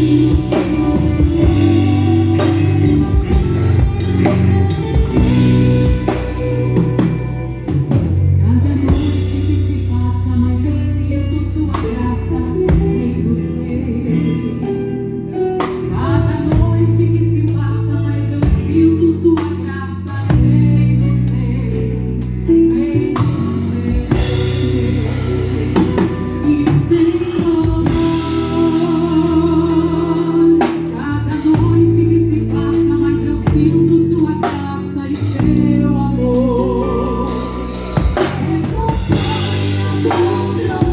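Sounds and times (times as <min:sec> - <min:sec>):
bass notes: 0:00.0 - 0:40.9
gospel singing: 0:00.0 - 0:40.9.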